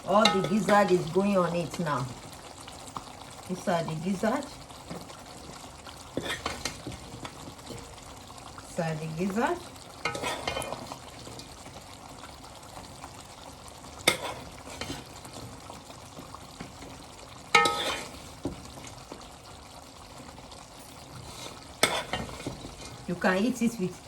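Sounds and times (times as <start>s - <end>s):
stew sizzling in a pot: 0.0s - 24.0s
utensil clanking against pot: 10.0s - 11.5s.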